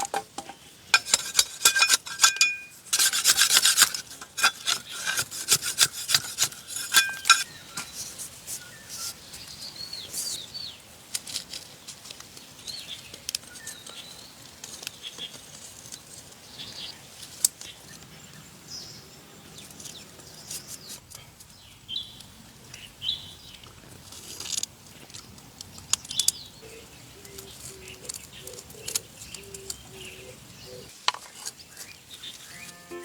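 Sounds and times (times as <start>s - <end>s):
birds chirping: 26.0s - 30.9s, 31.6s - 33.0s.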